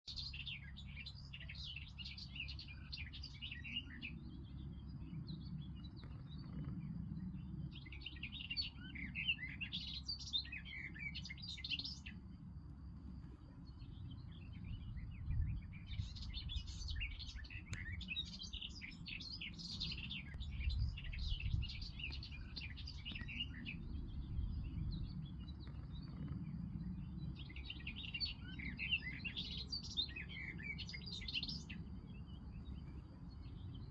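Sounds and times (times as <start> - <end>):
songbirds chirping: 0.0 - 33.9
steady low rumble: 12.2 - 33.9.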